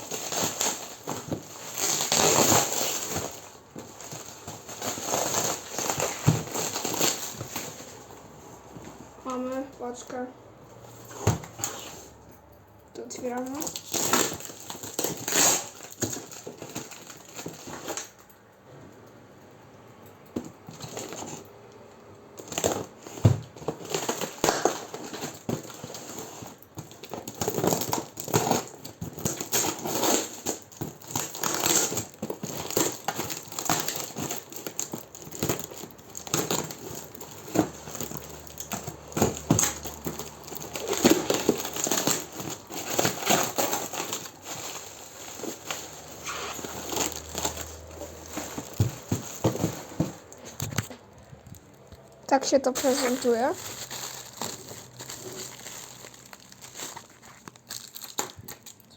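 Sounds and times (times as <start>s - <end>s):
packaging crinkling and rustling: 0.0s - 10.2s, 10.8s - 12.2s, 13.0s - 18.5s, 20.2s - 58.9s.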